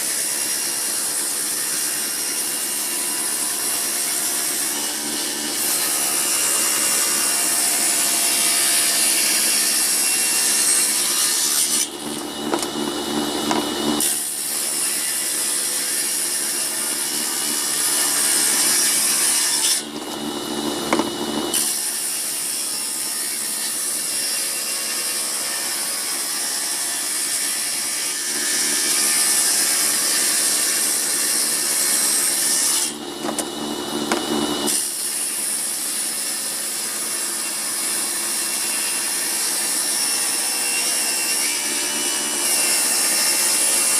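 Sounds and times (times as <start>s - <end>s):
table saw cutting wood: 0.0s - 43.9s
saw blade spinning freely: 9.1s - 22.4s, 31.9s - 35.0s.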